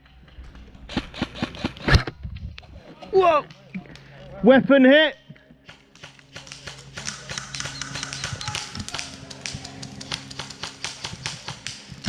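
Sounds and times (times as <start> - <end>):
airsoft gunfire: 5.6 - 12.0
pellets striking: 5.6 - 12.0.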